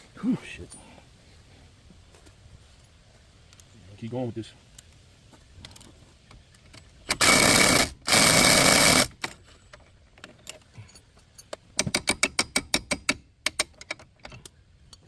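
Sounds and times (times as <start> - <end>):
power tool bursts: 7.1 - 9.1.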